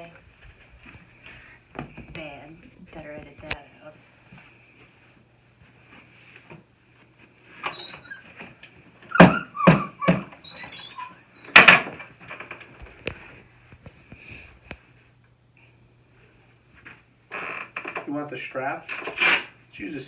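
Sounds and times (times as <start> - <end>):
faint low hum: 0.0 - 9.2.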